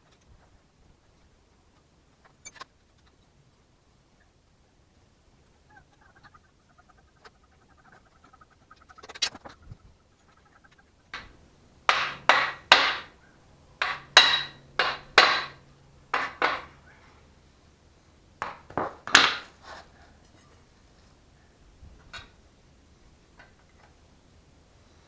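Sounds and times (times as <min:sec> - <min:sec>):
hammer striking metal: 0:11.2 - 0:13.1, 0:13.8 - 0:16.8, 0:18.4 - 0:19.5.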